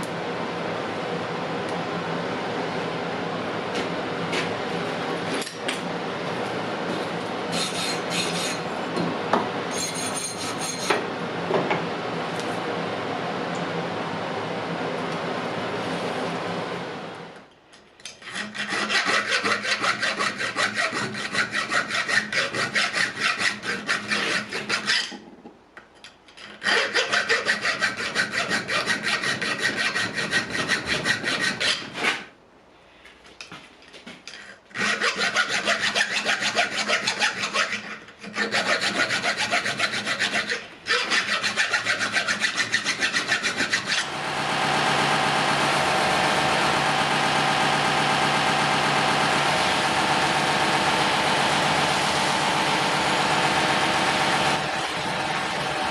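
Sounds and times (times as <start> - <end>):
hand file on axe head: 7.5 - 8.6, 9.7 - 10.9, 18.2 - 25.1, 26.4 - 32.3, 34.8 - 44.1.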